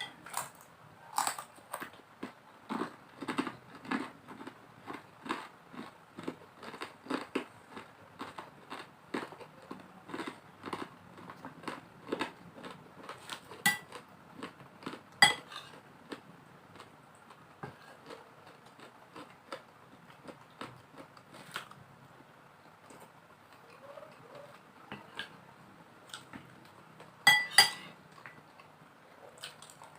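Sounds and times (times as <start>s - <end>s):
chewing and crunching: 0.1s - 21.9s, 22.6s - 29.9s
spoon clinking against plate: 13.7s - 13.9s, 15.2s - 15.6s, 27.3s - 27.9s.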